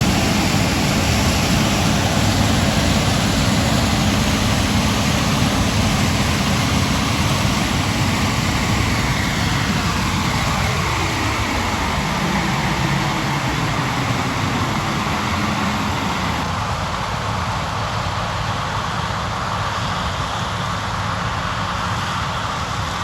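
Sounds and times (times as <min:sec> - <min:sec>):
falling mechanical whine: 0:00.0 - 0:16.5
combine harvester rumbling: 0:00.0 - 0:23.0.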